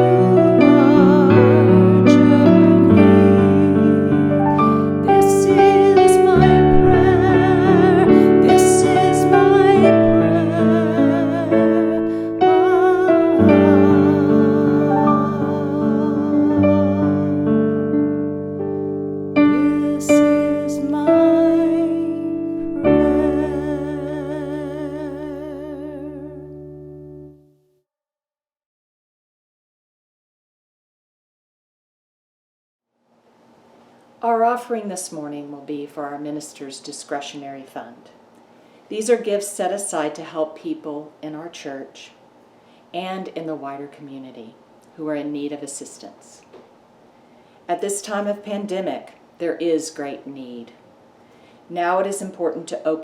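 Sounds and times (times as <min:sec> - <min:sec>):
woman singing with vibrato: 0:00.0 - 0:17.6, 0:19.4 - 0:26.6
piano accompaniment: 0:00.0 - 0:27.5.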